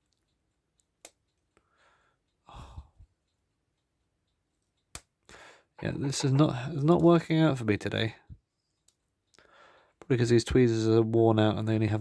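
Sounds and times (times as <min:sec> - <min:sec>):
tweezers clicking on clock parts: 0:00.0 - 0:01.6, 0:03.3 - 0:05.3
breathy sigh: 0:01.8 - 0:03.0.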